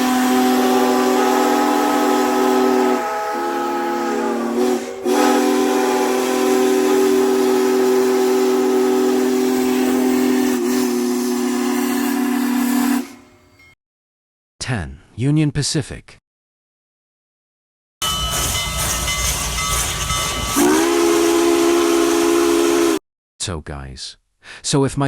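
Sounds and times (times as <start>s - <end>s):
steam hissing: 0.0s - 13.2s, 18.0s - 23.0s
steam locomotive chime whistle: 0.0s - 13.8s, 18.0s - 23.0s.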